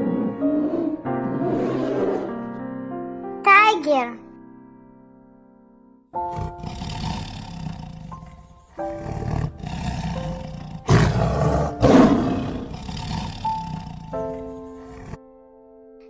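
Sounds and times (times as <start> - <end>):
tiger roaring: 0.0 - 2.5, 6.2 - 15.2.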